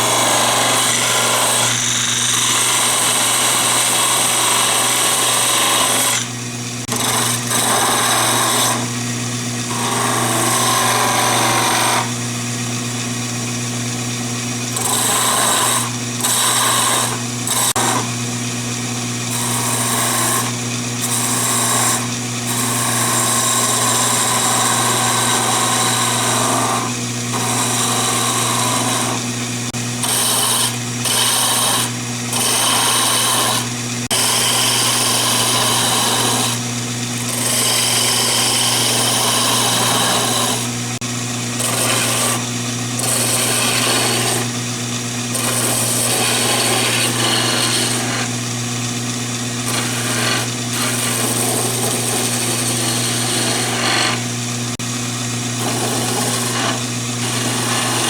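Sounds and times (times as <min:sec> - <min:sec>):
turning tool scraping wood: 0:00.0 - 0:08.9, 0:09.7 - 0:12.2, 0:14.6 - 0:18.2, 0:19.3 - 0:36.6, 0:37.2 - 0:40.8, 0:41.6 - 0:44.7, 0:45.3 - 0:54.9, 0:55.5 - 0:58.0
wood lathe humming: 0:00.0 - 0:58.0.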